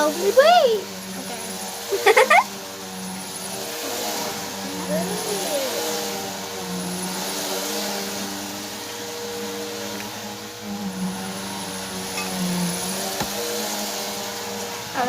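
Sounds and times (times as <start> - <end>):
small motor whirring: 0.0 - 15.0.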